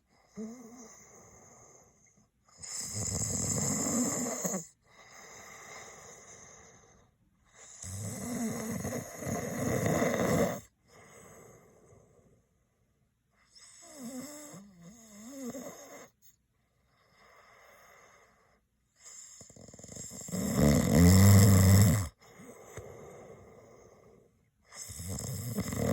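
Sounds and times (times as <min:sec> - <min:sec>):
soft breaths: 0:00.0 - 0:02.8, 0:03.9 - 0:09.5, 0:10.6 - 0:14.8, 0:15.8 - 0:19.5, 0:22.1 - 0:25.9
man snoring: 0:02.6 - 0:04.7, 0:07.7 - 0:10.7, 0:13.8 - 0:16.1, 0:19.4 - 0:23.7, 0:24.8 - 0:25.9.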